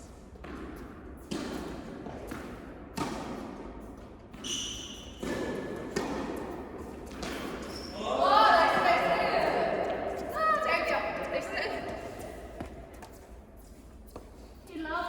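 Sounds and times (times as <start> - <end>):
tennis ball struck and bouncing: 0.4 - 3.8, 5.2 - 7.6
high squeak: 4.4 - 5.1.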